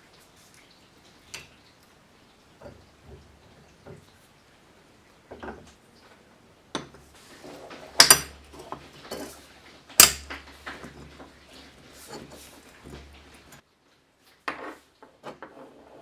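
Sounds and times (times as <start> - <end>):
metal parts being handled: 6.8 - 13.6
sharp metallic clanks: 8.0 - 9.4, 10.0 - 10.7.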